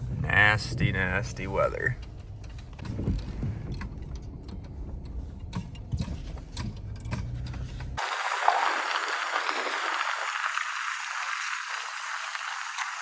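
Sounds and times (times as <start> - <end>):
truck engine running: 0.0 - 13.0
even hiss: 8.0 - 13.0.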